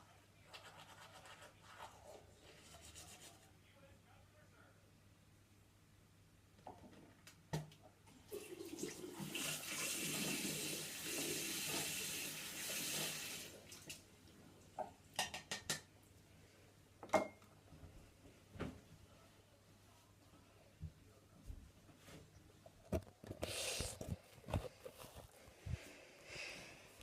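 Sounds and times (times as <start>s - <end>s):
water running: 8.1s - 14.1s.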